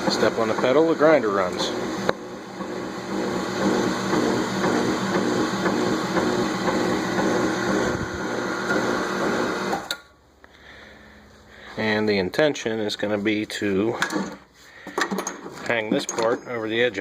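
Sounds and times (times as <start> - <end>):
electric meat grinder running: 0.0 - 9.9.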